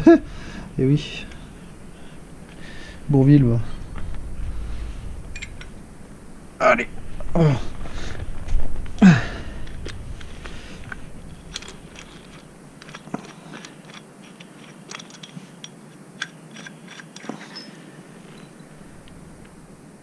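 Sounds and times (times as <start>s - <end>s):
small screws and washers clicking: 9.6s - 19.6s.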